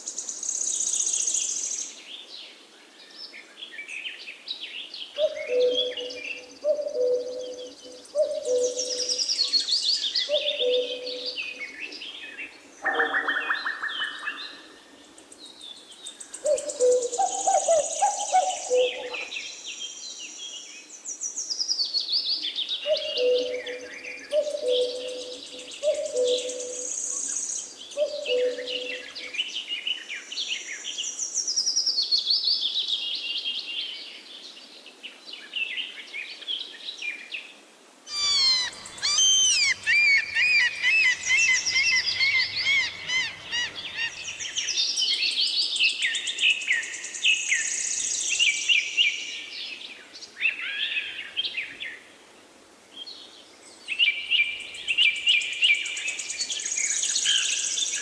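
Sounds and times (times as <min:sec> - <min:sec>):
songbirds singing: 0:00.0 - 0:52.2, 0:52.9 - 0:58.0
fast warbling birdsong: 0:12.8 - 0:14.7, 0:38.1 - 0:47.2.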